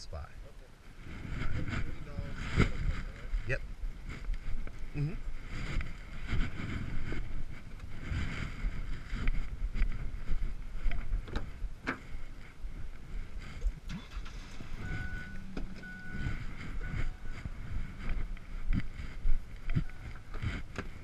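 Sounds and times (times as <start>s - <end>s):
wind rumbling on microphone: 0.0s - 21.0s
short high beeps: 14.0s - 17.6s.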